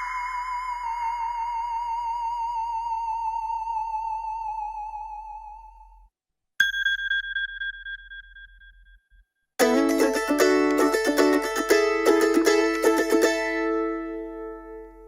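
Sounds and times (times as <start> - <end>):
bright electronic ping: 6.6 - 9.2.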